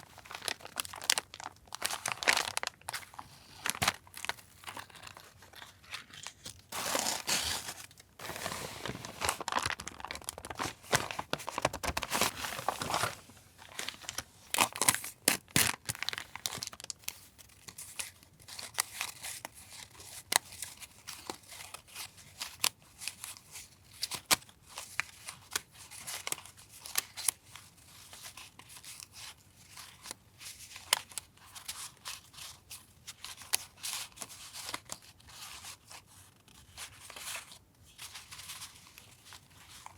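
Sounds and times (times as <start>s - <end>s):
paper crinkling and tearing: 0.0s - 21.8s
paper tapping and rustling: 6.0s - 14.2s.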